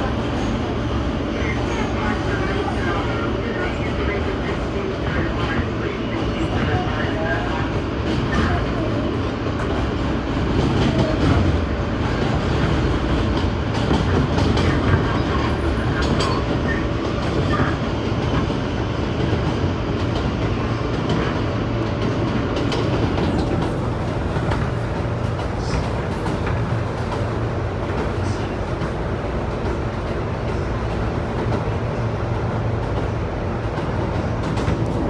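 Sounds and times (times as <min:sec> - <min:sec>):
train car rumble: 0:00.0 - 0:35.0.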